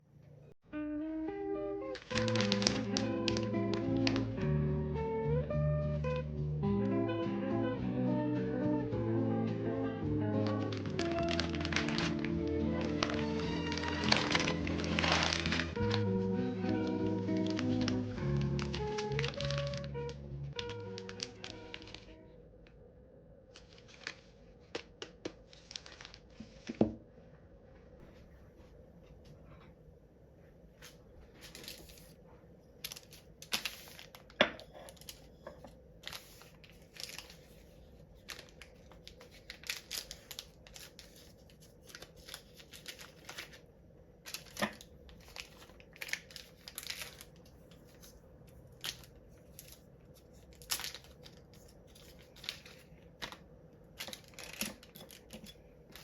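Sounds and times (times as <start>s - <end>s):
packaging crinkling and tearing: 1.8s - 4.4s, 10.4s - 22.2s, 23.5s - 26.8s, 31.4s - 32.2s, 32.8s - 56.0s.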